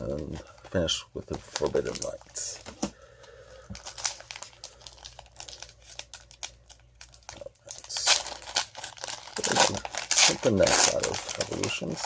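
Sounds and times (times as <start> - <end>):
foil wrapper crinkling: 0.0 - 12.0
foil tearing rustle: 3.8 - 12.0.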